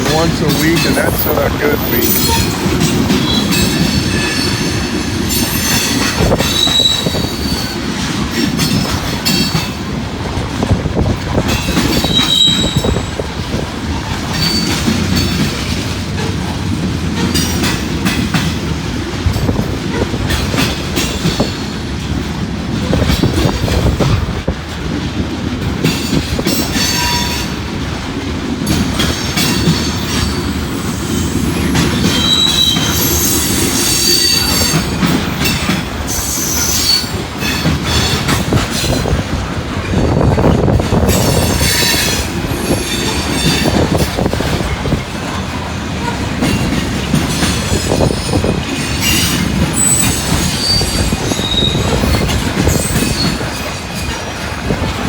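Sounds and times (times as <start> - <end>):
freight train rumbling past: 0.0 - 55.0
wheels clacking over rail joints: 0.0 - 55.0
wheel squeals: 1.1 - 7.8, 11.8 - 13.2, 14.3 - 15.4, 29.1 - 38.2, 47.4 - 54.2.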